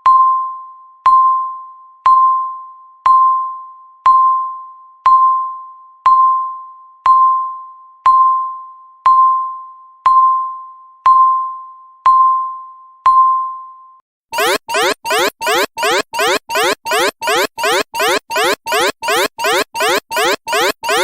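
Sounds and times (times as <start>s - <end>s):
electronic alarm chirps: 14.4s - 21.0s
timer beeping: 14.4s - 21.0s.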